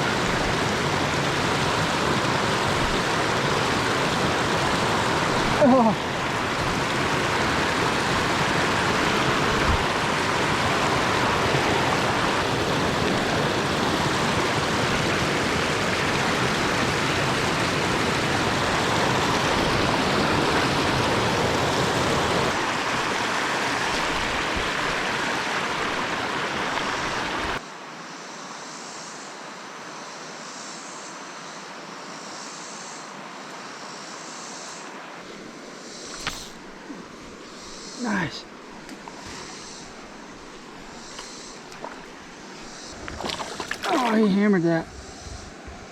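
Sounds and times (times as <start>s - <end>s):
river water rushing: 0.0s - 28.0s, 34.8s - 45.9s.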